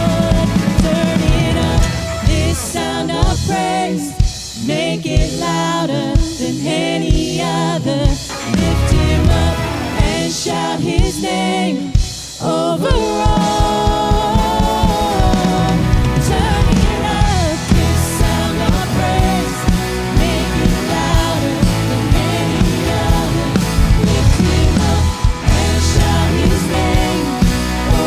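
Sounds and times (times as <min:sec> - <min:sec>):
drum kit hits: 0:00.0 - 0:03.5, 0:08.3 - 0:10.3, 0:13.2 - 0:28.0
person singing: 0:00.0 - 0:28.0.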